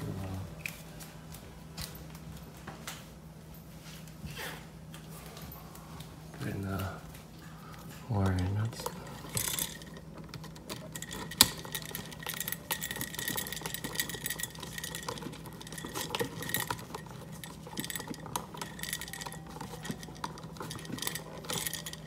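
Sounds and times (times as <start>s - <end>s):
wires and wire nuts clicking: 8.1s - 22.0s.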